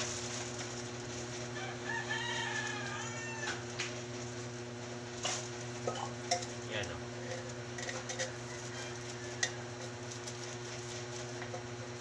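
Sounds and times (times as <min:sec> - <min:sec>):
rooster crowing: 0:01.5 - 0:03.9, 0:08.2 - 0:09.9
steady low hum: 0:03.6 - 0:12.0.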